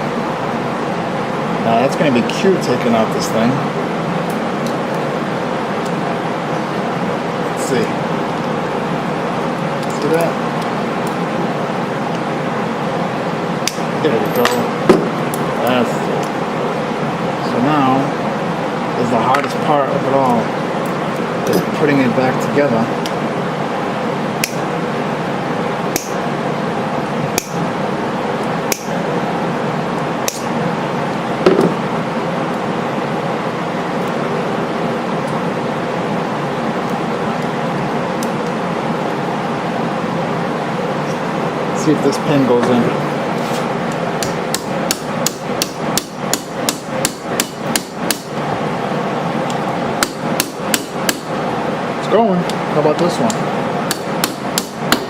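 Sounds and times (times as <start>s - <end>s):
knock: 31.5s - 31.8s
hammer striking metal pin: 53.9s - 55.0s.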